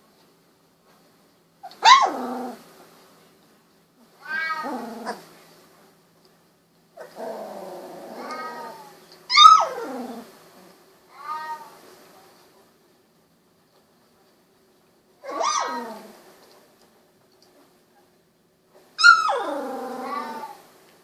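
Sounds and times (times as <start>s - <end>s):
puppies whining and crying: 8.2s - 10.0s, 15.2s - 16.0s, 19.0s - 20.6s
puppy yelp falling in pitch: 9.3s - 9.8s, 15.3s - 15.8s, 19.0s - 19.4s.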